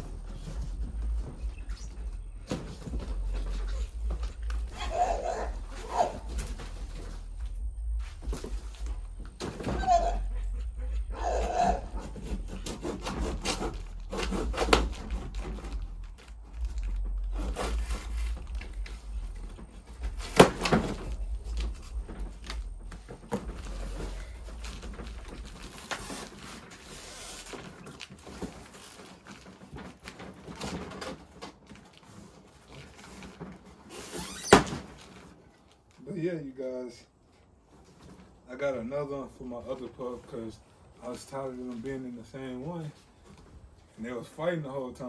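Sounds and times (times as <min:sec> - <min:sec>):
scraping and rubbing of crate: 0:00.0 - 0:35.3.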